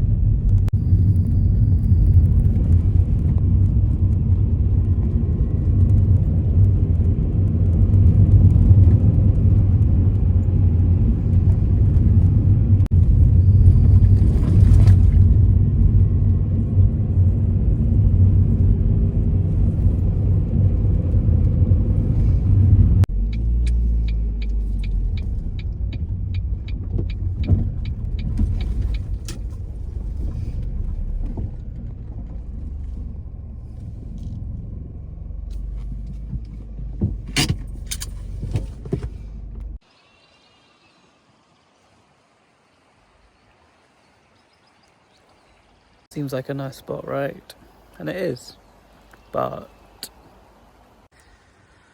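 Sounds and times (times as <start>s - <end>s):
car engine and road rumble: 0.0s - 51.9s
regular ticking: 23.0s - 29.5s.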